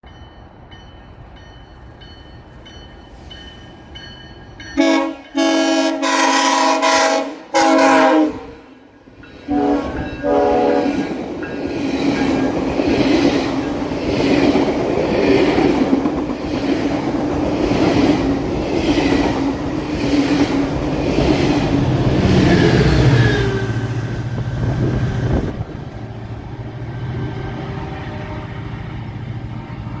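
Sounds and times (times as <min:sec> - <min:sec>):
diesel locomotive drone: 0:00.0 - 0:30.0
train horn blasts: 0:04.8 - 0:11.1, 0:27.8 - 0:28.7
train wheels clickety-clack: 0:09.2 - 0:25.8.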